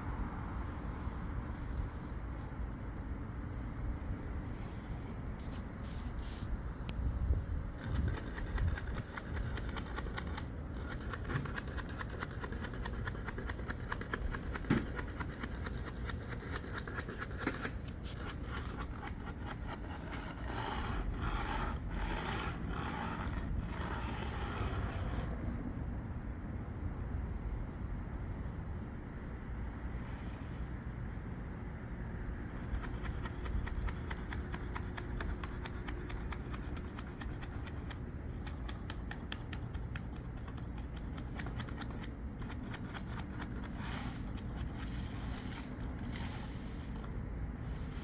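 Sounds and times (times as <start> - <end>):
low wind rumble: 0.0 - 9.2
hand tool scraping concrete: 14.6 - 25.3, 43.2 - 48.0.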